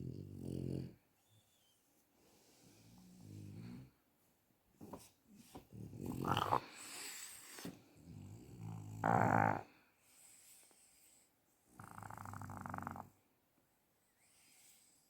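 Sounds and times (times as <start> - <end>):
dog snoring: 0.0 - 1.0, 5.7 - 9.7, 11.7 - 13.2
dog snorting: 5.9 - 7.8, 9.0 - 9.6.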